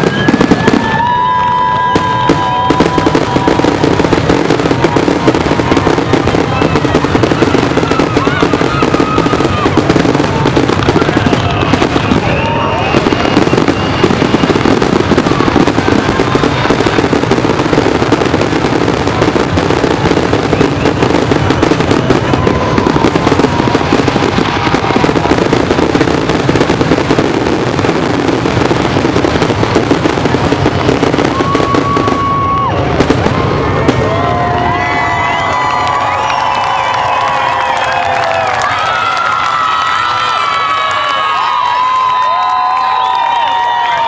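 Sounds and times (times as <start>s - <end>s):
fireworks bangs and crackles: 0.0s - 44.0s
whistling fireworks: 0.0s - 44.0s.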